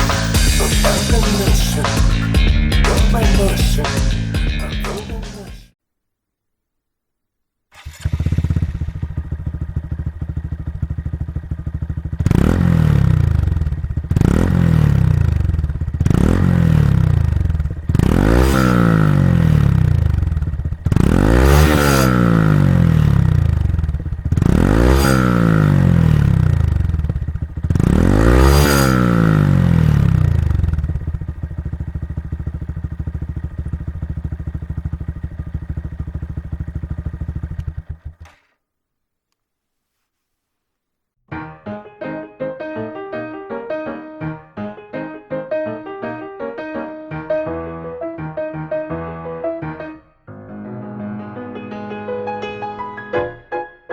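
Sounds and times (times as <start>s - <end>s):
motorcycle engine revving: 0.0s - 5.4s, 7.7s - 38.5s.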